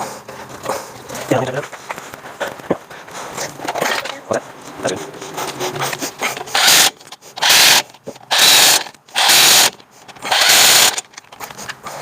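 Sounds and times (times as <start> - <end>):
power tool bursts: 6.4 - 11.1.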